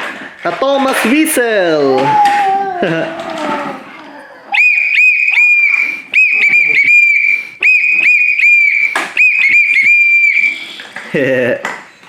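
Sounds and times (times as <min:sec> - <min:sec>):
shrill toy whistle toots: 0:04.5 - 0:10.9.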